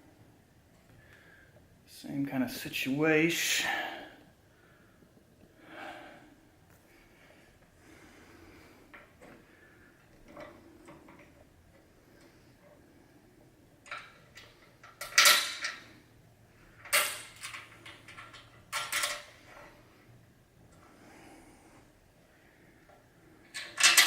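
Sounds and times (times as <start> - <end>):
metal parts clattering: 13.9 - 15.8, 16.8 - 19.3, 23.5 - 24.0.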